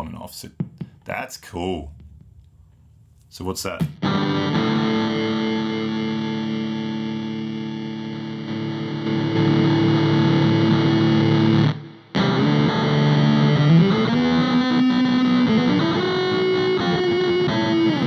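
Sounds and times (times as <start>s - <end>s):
distorted electric guitar tone: 3.9s - 18.0s.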